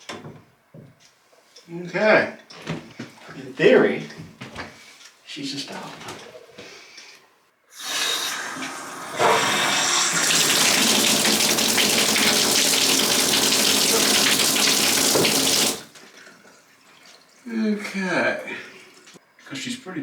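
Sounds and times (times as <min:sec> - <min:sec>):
shower head water spraying: 0:07.8 - 0:16.0.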